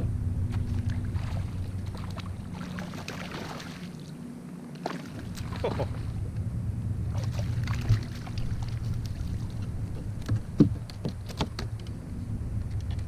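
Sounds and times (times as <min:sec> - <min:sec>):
low rumble of kayak on water: 0:00.0 - 0:13.0
knocks and rattles against hull: 0:07.1 - 0:12.0.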